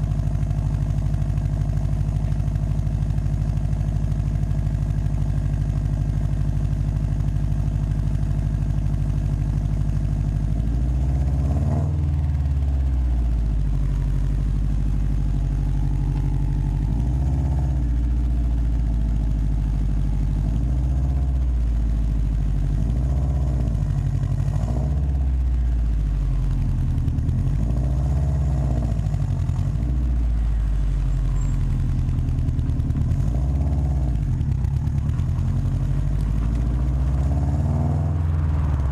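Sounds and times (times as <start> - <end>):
car engine idling and revving: 0.0 - 38.9.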